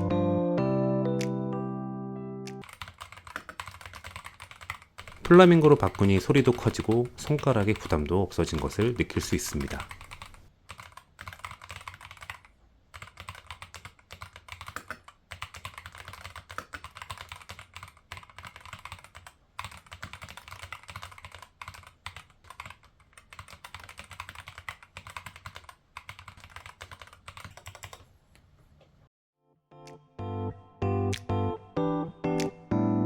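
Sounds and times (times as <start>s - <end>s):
typing on mechanical keyboard: 2.6s - 28.1s.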